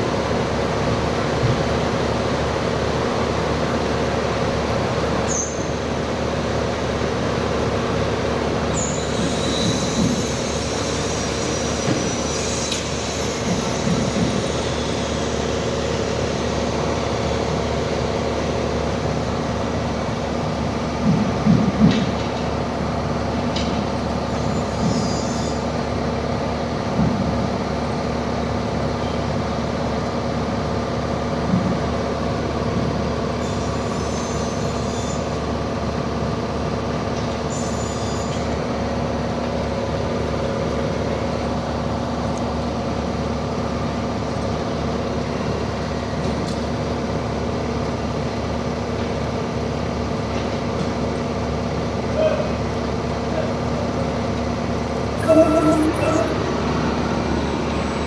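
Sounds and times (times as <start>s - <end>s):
cnc router humming: 55.2s - 57.8s.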